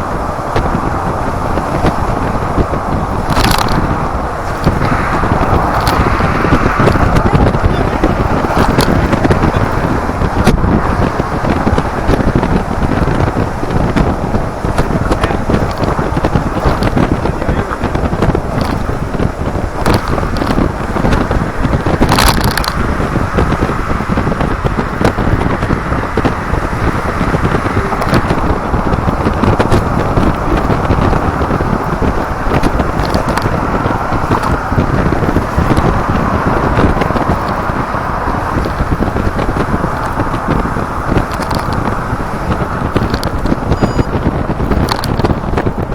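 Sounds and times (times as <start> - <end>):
road noise: 0.0 - 45.9
wind buffeting microphone: 0.0 - 45.9
crackles and pops: 25.0 - 45.9.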